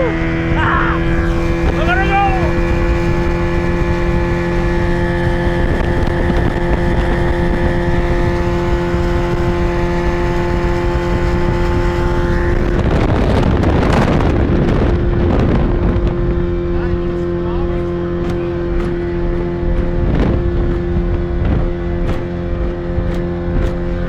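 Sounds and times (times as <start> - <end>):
outboard motor running: 0.0 - 24.0
loud rushing noise: 0.3 - 14.6.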